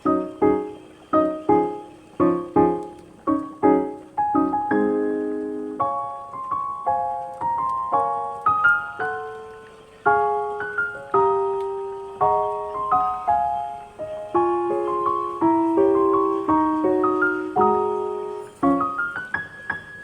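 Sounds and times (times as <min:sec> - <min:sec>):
piano music: 0:00.0 - 0:20.0.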